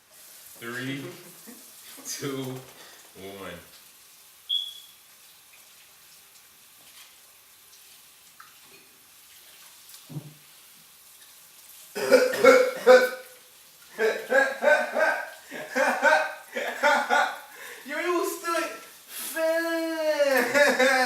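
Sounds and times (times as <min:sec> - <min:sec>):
short high chirp: 0:04.5 - 0:05.0
man's vocal noise of disgust: 0:12.0 - 0:13.3, 0:14.0 - 0:21.0.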